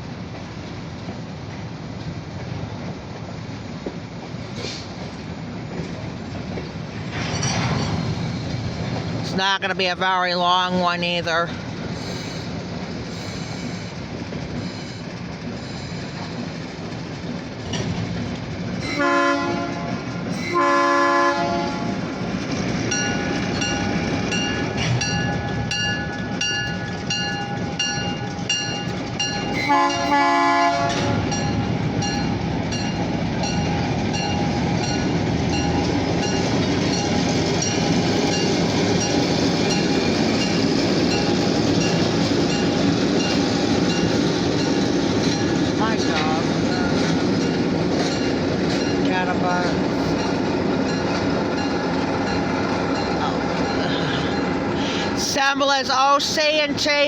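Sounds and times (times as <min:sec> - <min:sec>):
locomotive engine rumble: 0:00.0 - 0:57.0
multi-note train horn: 0:18.8 - 0:22.1, 0:29.6 - 0:31.4.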